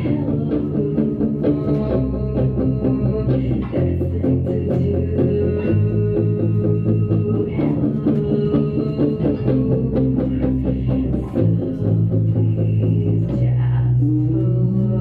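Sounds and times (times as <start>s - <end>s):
bass guitar: 0.0s - 15.0s
electric guitars: 0.0s - 15.0s.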